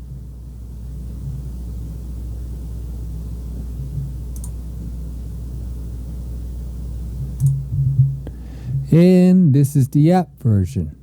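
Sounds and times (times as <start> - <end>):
faint low rumbling: 0.0 - 11.0
steady low hum: 0.0 - 11.0.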